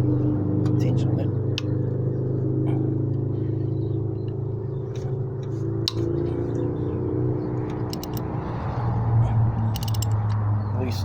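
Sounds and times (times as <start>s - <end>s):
low engine-like drone: 0.0s - 11.0s
sharp metallic click: 7.6s - 8.3s, 9.7s - 10.4s
socket wrench ratchet clicks: 7.7s - 8.3s, 9.7s - 10.4s.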